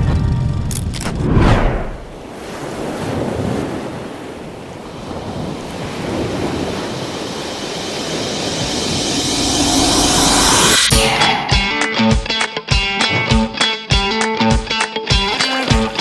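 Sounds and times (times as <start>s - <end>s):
waves breaking and washing in: 1.1s - 11.6s
wind buffeting microphone: 1.8s - 11.7s.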